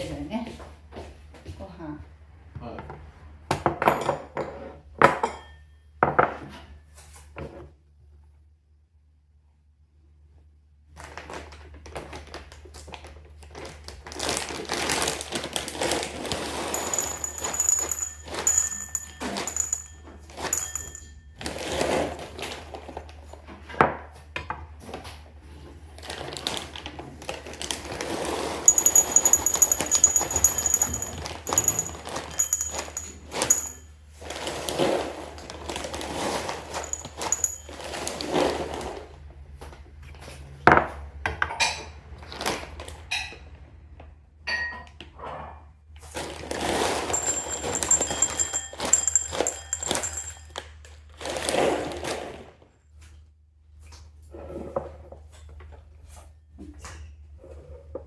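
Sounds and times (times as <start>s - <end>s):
bowls and containers clinking: 16.0s - 22.4s, 28.5s - 33.9s, 36.5s - 38.2s, 47.1s - 50.6s.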